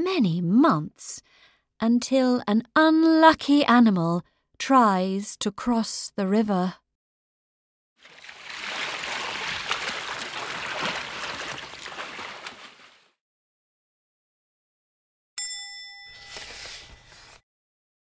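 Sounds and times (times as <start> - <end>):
water splashing and rushing: 8.0 - 13.1
bright ringing ding: 15.4 - 16.6.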